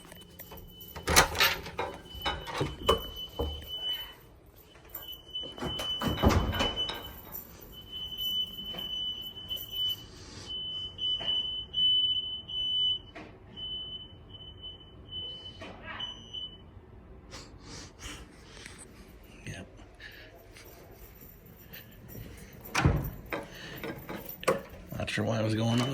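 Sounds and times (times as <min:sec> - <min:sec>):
smoke alarm beeping: 0:00.0 - 0:17.0, 0:20.2 - 0:25.9.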